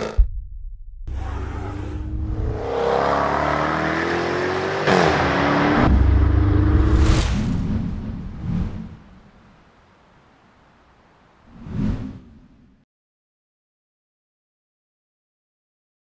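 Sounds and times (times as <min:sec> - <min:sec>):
sharp low thump: 0:00.0 - 0:01.3
sports car engine accelerating: 0:01.1 - 0:06.9
short whoosh: 0:05.8 - 0:09.5.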